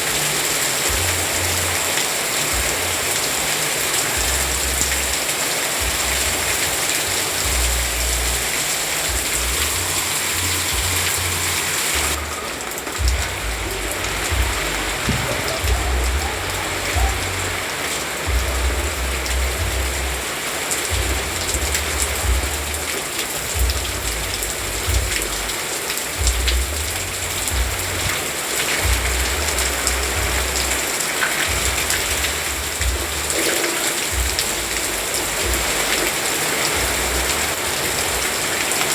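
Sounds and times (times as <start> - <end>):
steady rain falling: 0.0 - 38.9
low rumble: 9.1 - 17.6.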